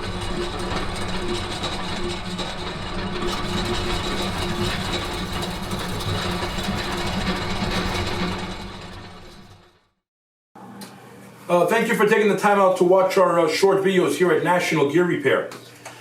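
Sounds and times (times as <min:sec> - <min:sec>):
high mechanical whine: 0:00.0 - 0:09.7
industrial gearbox humming: 0:00.0 - 0:09.9.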